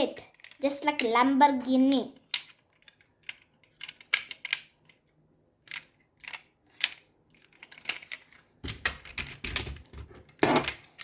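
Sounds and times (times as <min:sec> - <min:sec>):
toy car clicks and taps: 0:00.3 - 0:01.2, 0:01.9 - 0:05.0.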